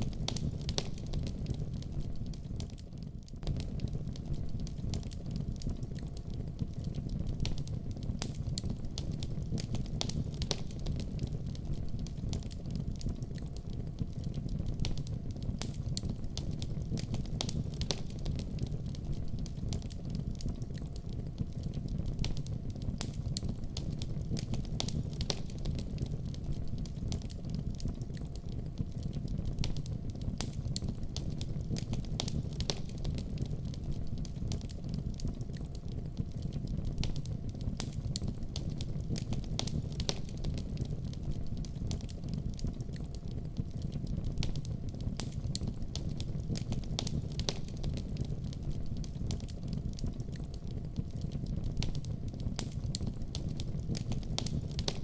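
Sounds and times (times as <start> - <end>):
fire crackling and popping: 0.0 - 55.0
low rumble of flames: 0.0 - 55.0.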